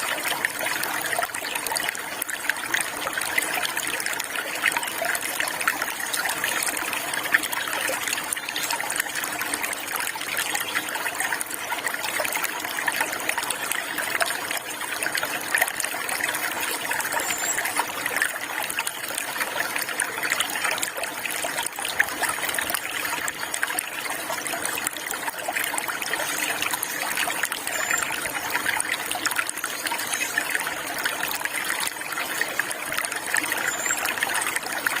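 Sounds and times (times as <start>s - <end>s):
water trickling: 0.0s - 35.0s
faint bird chirps: 17.2s - 17.8s, 27.6s - 28.6s, 33.5s - 34.2s.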